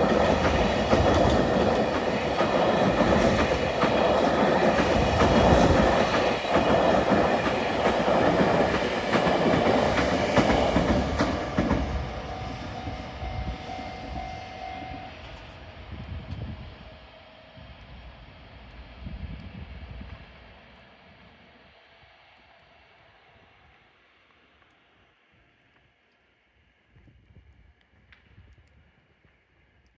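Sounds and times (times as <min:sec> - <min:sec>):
wheels clacking over rail joints: 0:00.0 - 0:13.0
train rumble: 0:00.0 - 0:21.7.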